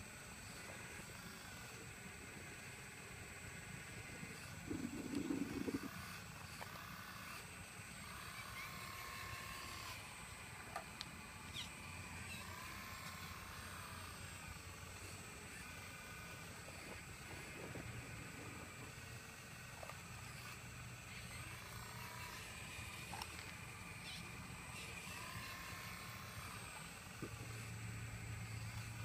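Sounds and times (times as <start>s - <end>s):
high whine: 3.8s - 6.1s
excavator engine rumbling: 4.3s - 6.2s.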